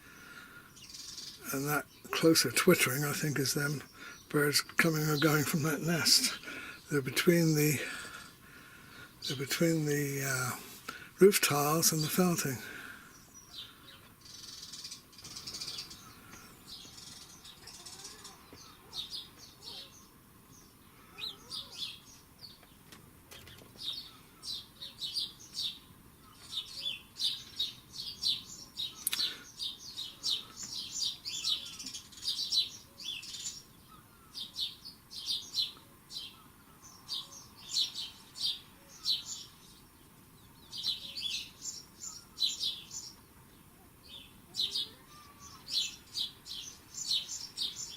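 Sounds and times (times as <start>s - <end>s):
small birds twittering: 0.0s - 47.9s
sharp click: 29.0s - 29.3s.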